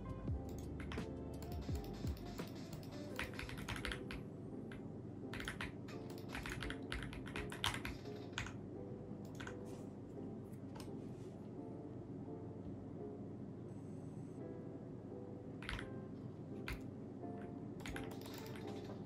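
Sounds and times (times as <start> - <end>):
background music: 0.0 - 19.0
mechanical keyboard typing: 0.3 - 8.6, 9.2 - 9.6, 15.6 - 15.9, 16.6 - 16.9, 17.8 - 19.0.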